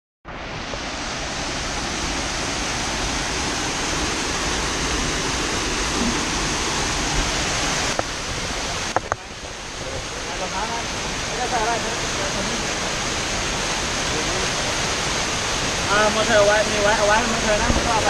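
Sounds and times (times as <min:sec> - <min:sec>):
waterfall rushing: 0:00.3 - 0:18.0.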